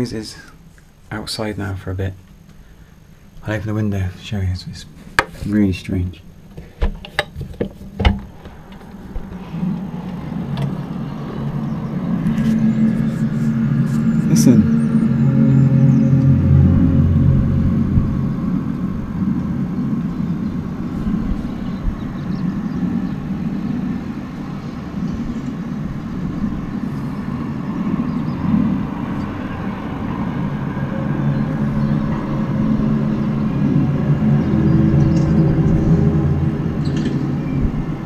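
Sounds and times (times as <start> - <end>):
low drawn-out drone: 0.0 - 38.0.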